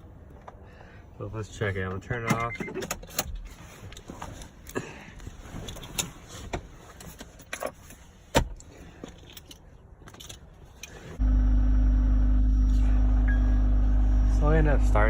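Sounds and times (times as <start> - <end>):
car engine starting and running: 10.9 - 15.0.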